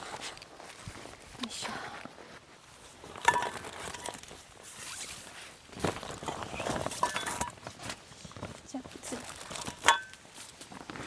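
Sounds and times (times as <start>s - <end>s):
camping gear rustling and knocking: 0.0s - 11.0s
short ringing clink: 9.9s - 10.1s.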